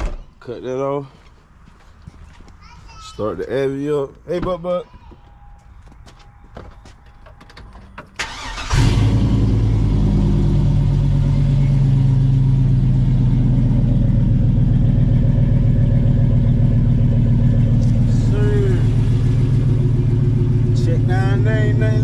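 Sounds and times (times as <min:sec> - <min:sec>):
man talking: 0:03.1 - 0:04.9, 0:17.8 - 0:19.1, 0:20.7 - 0:22.0
truck engine cranking and idling: 0:07.0 - 0:22.0.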